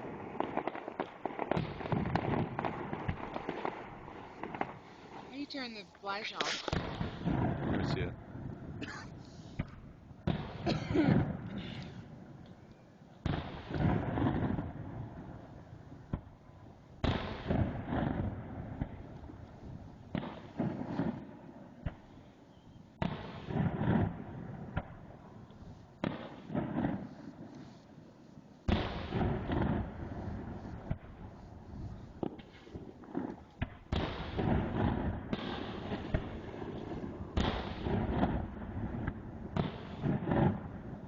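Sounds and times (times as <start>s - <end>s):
fireworks shells bursting: 0.0s - 8.0s.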